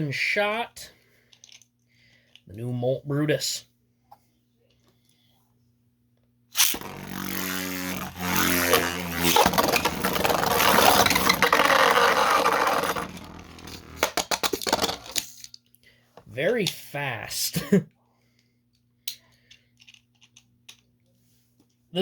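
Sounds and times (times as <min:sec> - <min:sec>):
string launcher ripping: 0:06.5 - 0:15.1
spinning tops whirring: 0:06.6 - 0:15.2
spinning tops clashing and scraping: 0:06.6 - 0:15.5.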